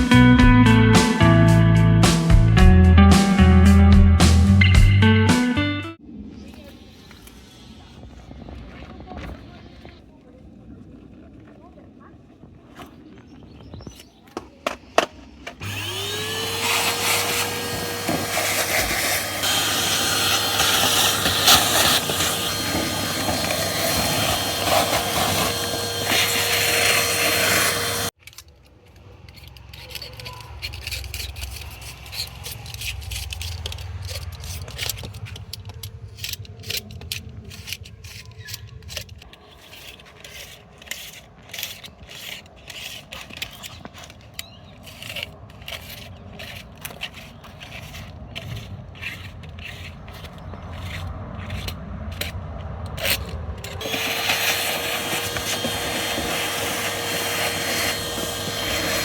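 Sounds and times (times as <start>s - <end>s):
hand scraper scraping and clicking: 13.7s - 59.0s
electric motor whining: 15.6s - 28.2s, 53.8s - 59.0s.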